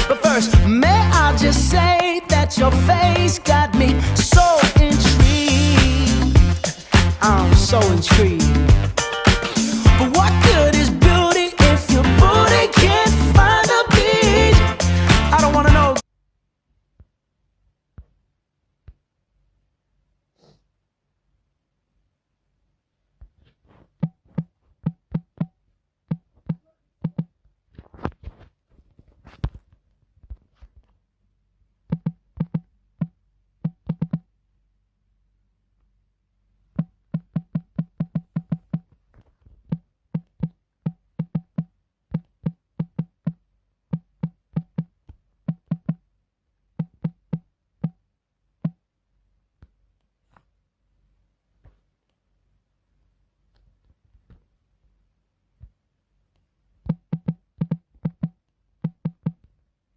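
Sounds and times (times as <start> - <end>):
drum machine percussion hits: 0.0 - 1.0, 4.3 - 16.0, 31.9 - 34.2, 36.8 - 38.9, 39.7 - 46.0, 56.9 - 59.4.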